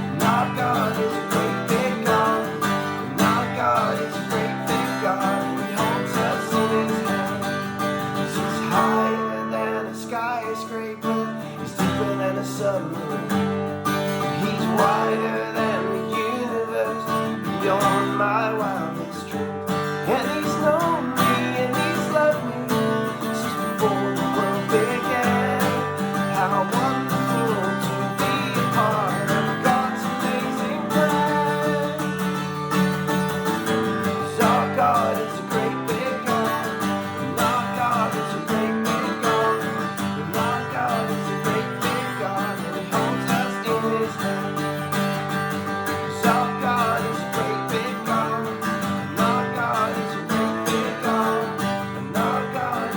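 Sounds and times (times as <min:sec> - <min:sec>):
person singing: 0:00.0 - 0:45.2, 0:45.8 - 0:52.9
acoustic guitar playing: 0:00.0 - 0:52.9.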